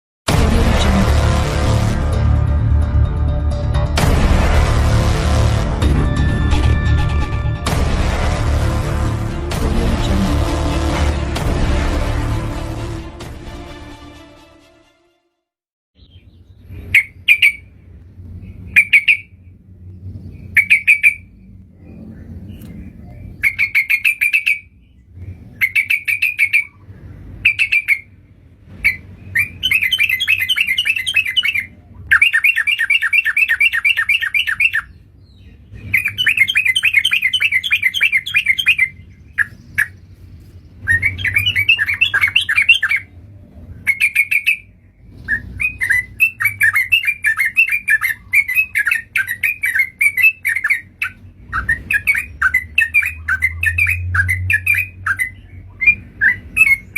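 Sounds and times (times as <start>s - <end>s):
bird chattering calls: 18.5s - 19.3s, 20.4s - 21.3s, 22.1s - 24.7s, 25.6s - 28.2s, 28.8s - 40.1s, 40.8s - 43.2s, 43.8s - 56.9s.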